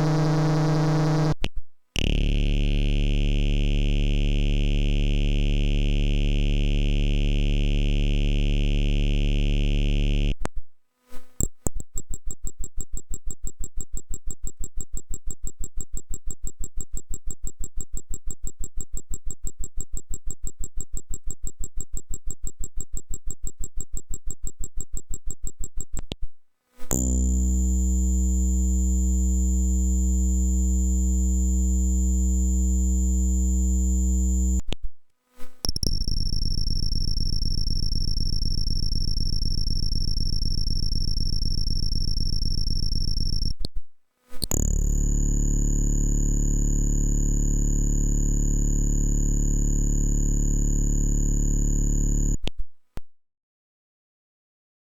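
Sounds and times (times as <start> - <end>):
synthesizer buzzing drone: 0.0 - 1.4, 2.0 - 10.1, 27.0 - 34.6, 35.8 - 43.5, 44.5 - 52.4
rapid electronic pulsing: 35.8 - 43.5.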